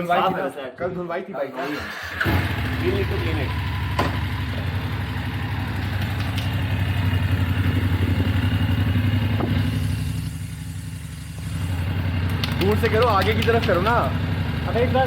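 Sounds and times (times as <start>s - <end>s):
motorcycle engine idling: 2.0s - 15.0s.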